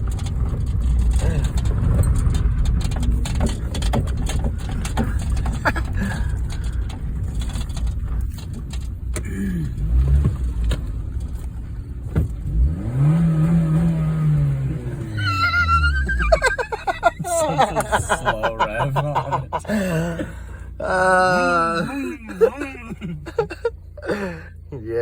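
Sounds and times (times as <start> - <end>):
knocks and rattles: 0.0 - 12.7, 13.3 - 19.6
car engine revving: 0.0 - 25.0.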